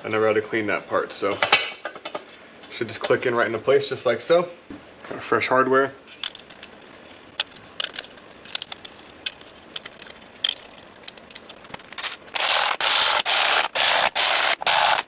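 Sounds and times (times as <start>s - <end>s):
hand ratchet strokes: 12.0s - 15.0s.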